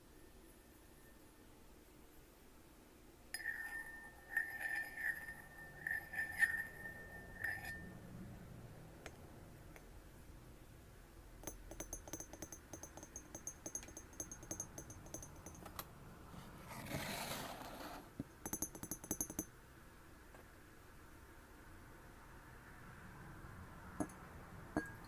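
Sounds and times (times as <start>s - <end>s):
fast tapping on glass: 11.4s - 15.6s, 18.4s - 19.5s.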